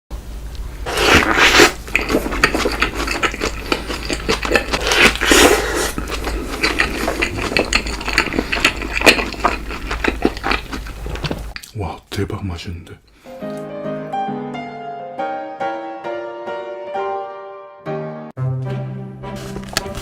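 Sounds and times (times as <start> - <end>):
close-miked eating noises: 0.5 - 12.4.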